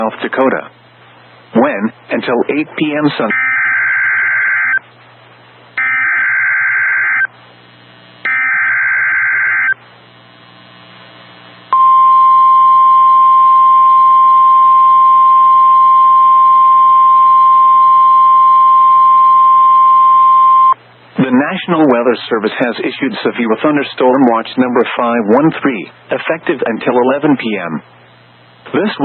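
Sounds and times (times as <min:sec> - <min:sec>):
radio hiss: 0:09.7 - 0:11.8, 0:20.3 - 0:29.0
steady single-pitch alert tone: 0:11.7 - 0:20.8.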